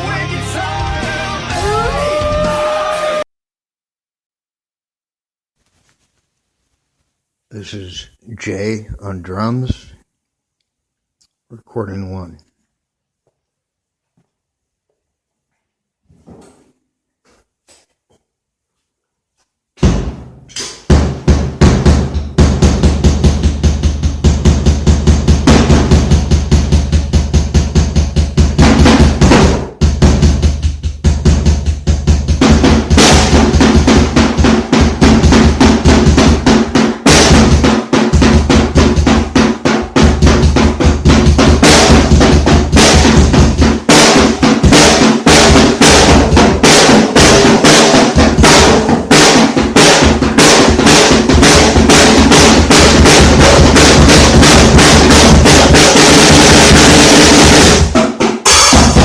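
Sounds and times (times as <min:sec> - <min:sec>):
drum kit played fast: 0:00.0 - 0:03.2, 0:19.8 - 0:59.0.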